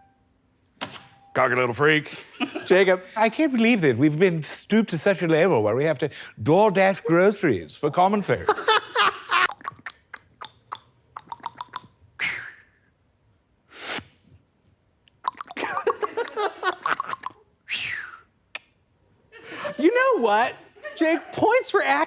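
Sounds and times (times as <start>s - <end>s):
man tongue clicking: 9.5s - 12.6s, 15.1s - 15.7s, 16.7s - 18.8s
man making breathy hisses: 13.7s - 14.3s, 17.7s - 18.2s.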